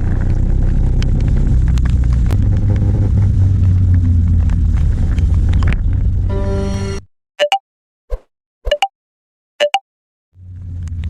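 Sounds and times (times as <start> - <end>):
low vehicle rumble: 0.0 - 6.4, 10.4 - 11.0.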